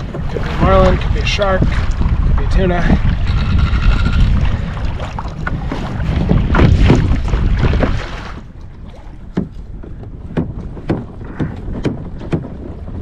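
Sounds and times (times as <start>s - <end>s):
wind and water rushing: 0.0s - 13.0s
sharp knocks: 9.3s - 12.6s.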